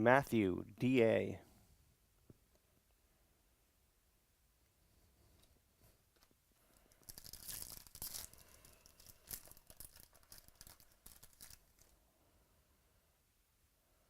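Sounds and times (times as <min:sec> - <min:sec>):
foil wrapper tearing and crinkling: 0:07.0 - 0:11.9.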